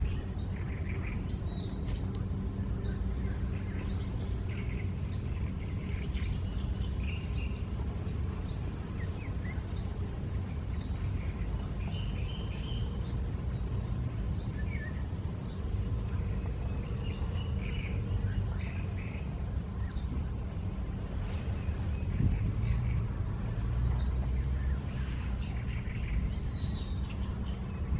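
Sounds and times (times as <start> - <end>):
small birds chirping: 0.0 - 27.9
steady low rumble: 0.0 - 27.9.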